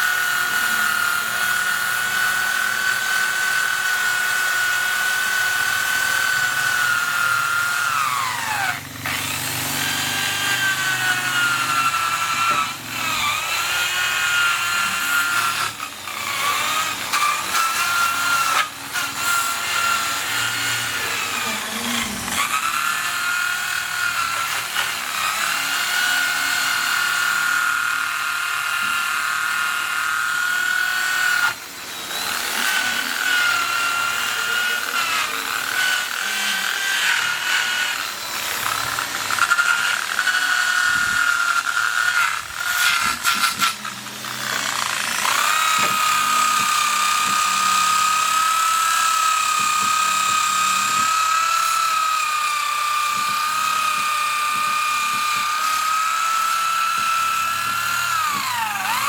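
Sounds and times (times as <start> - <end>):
power tool whining on wood: 0.0 - 59.0.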